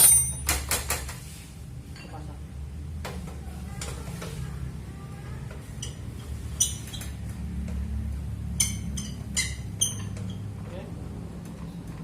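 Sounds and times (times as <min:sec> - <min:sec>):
metal parts clinking: 0:00.0 - 0:00.6.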